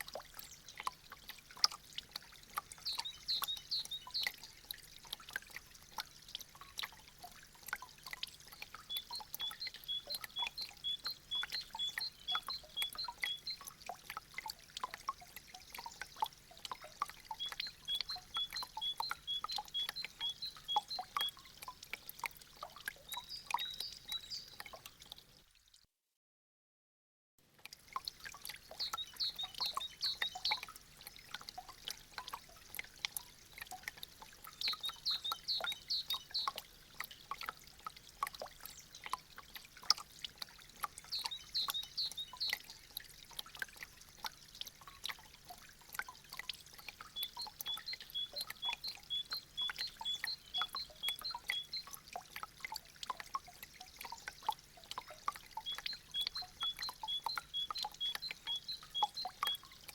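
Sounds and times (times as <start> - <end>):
meltwater dripping and trickling: 0.0 - 25.8, 27.4 - 59.9
small bird chirping: 2.8 - 4.4, 8.9 - 13.7, 17.3 - 21.5, 23.0 - 24.7, 28.7 - 30.7, 34.6 - 36.6, 41.0 - 42.6, 47.1 - 51.9, 55.6 - 59.7.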